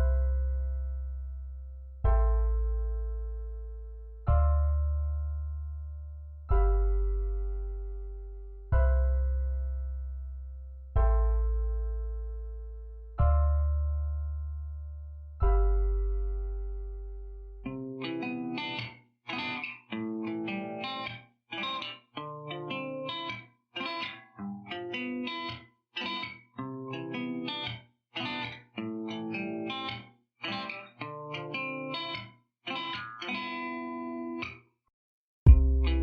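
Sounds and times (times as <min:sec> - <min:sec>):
plucked guitar music: 0:17.6 - 0:34.6, 0:35.5 - 0:36.0.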